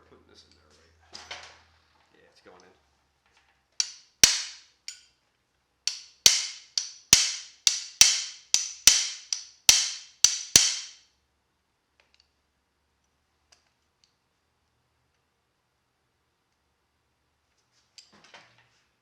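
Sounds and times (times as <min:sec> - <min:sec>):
hammer striking metal pin: 0:03.8 - 0:05.1, 0:05.9 - 0:11.0.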